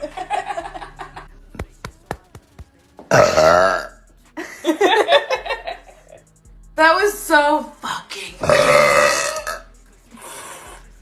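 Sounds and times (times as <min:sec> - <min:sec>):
woman burping: 0:03.1 - 0:04.0, 0:08.4 - 0:09.6.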